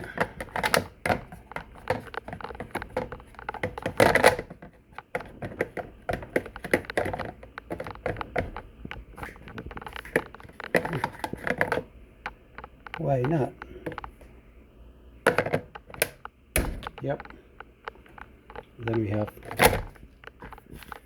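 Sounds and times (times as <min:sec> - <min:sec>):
plastic clatter: 0:00.0 - 0:11.9, 0:15.3 - 0:21.0
plastic parts clicking and knocking: 0:00.0 - 0:14.2, 0:15.3 - 0:21.0.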